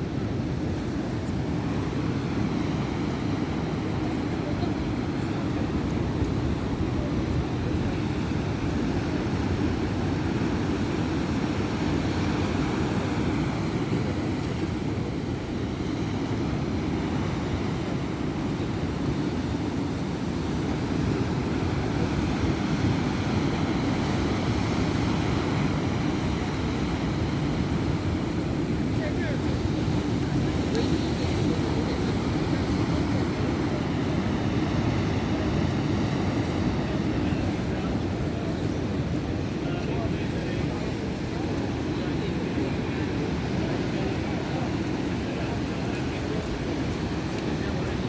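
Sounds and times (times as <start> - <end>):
heavy surf breaking: 19.4 - 48.0.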